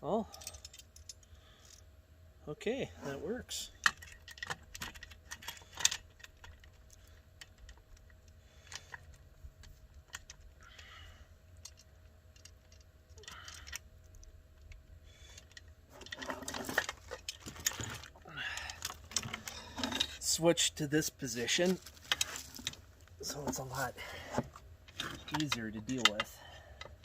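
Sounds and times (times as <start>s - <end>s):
saw chain metallic clicks and rattles: 0.3s - 1.8s, 3.8s - 9.2s, 11.6s - 20.2s, 24.8s - 27.0s.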